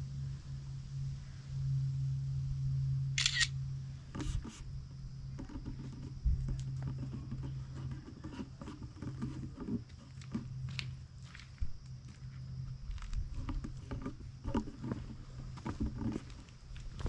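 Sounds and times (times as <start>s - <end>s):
camera shutter clicks: 3.2s - 3.5s
scuffing and rustling: 5.6s - 17.0s.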